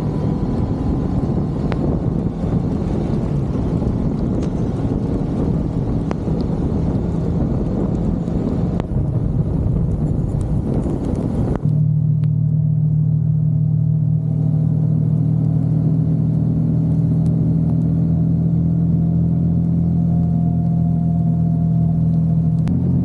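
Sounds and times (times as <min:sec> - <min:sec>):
wind noise: 0:00.0 - 0:11.9
vehicle engine droning: 0:00.0 - 0:23.0.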